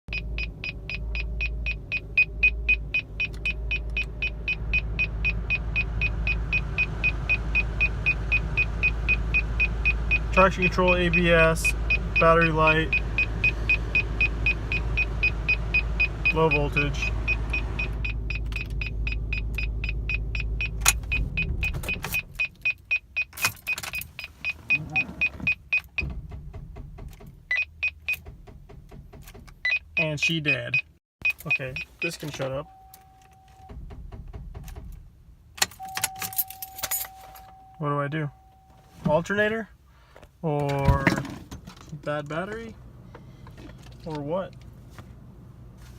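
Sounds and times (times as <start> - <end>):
rapid dashboard warning beeps: 0.1 - 26.2, 27.5 - 28.2, 29.6 - 33.8, 35.8 - 39.0
car engine rumble: 0.1 - 45.9.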